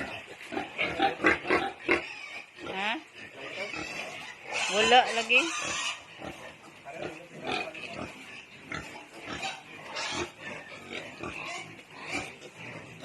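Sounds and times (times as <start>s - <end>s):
pigs grunting: 0.0s - 13.0s
pigs squealing: 0.0s - 13.0s.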